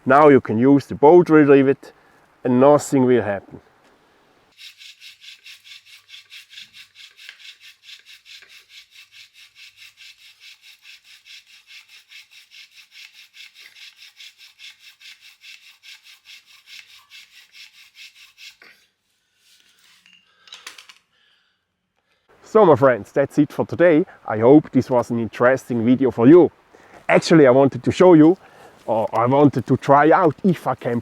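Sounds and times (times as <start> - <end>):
bow drill spindle rasping: 4.5 - 20.4.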